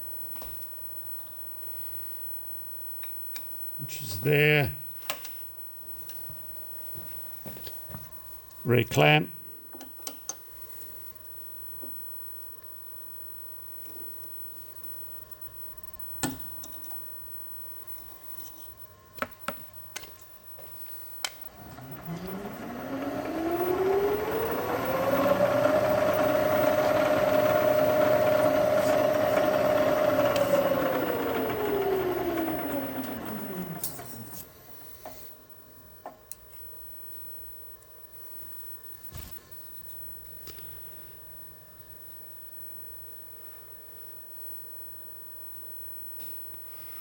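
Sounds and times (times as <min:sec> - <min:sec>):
milling machine motor running: 0:21.5 - 0:35.0.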